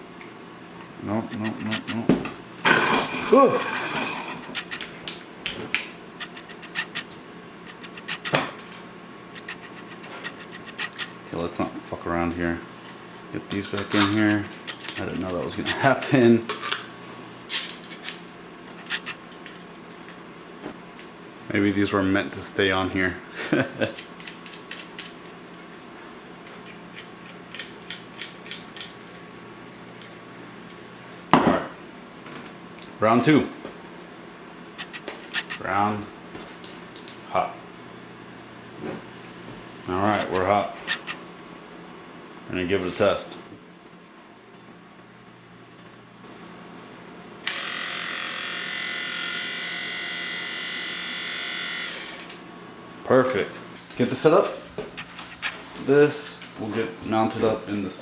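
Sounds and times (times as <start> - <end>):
faint steady hum: 0.0 - 58.0
small motor whining: 47.5 - 52.4.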